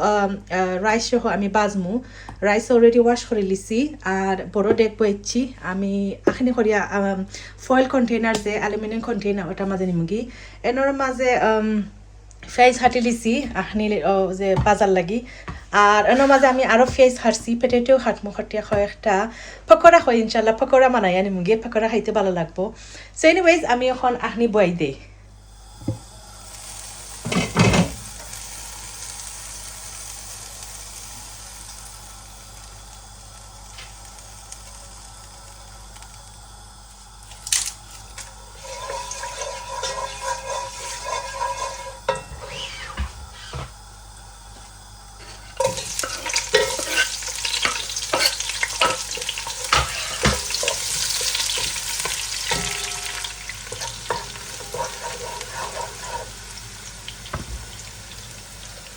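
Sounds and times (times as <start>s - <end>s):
food sizzling in oil: 15.7s - 18.2s, 25.3s - 58.9s
spoon scraping a pot: 38.6s - 43.7s, 45.6s - 56.4s.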